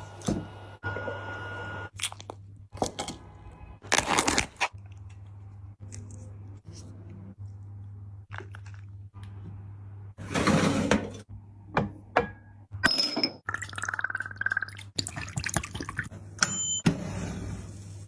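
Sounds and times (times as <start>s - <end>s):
low electrical hum: 0.0s - 16.7s
crunchy eating sounds: 1.9s - 3.1s.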